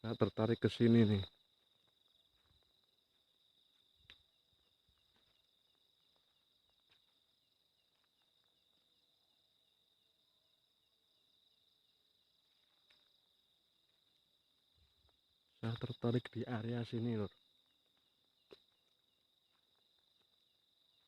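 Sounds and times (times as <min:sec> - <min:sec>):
cricket trill: 0:00.0 - 0:21.0
pulsing insect chirp: 0:00.0 - 0:21.0.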